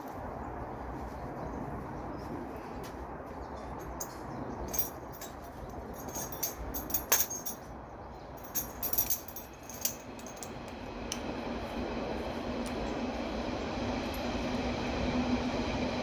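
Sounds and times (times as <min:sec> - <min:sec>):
gym gear clinking and rattling: 0:03.8 - 0:07.6, 0:08.4 - 0:10.8.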